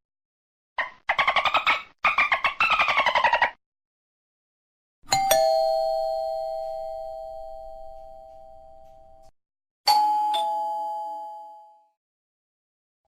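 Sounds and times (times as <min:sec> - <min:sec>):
doorbell chime ding dong: 0:05.1 - 0:09.3, 0:09.9 - 0:12.0.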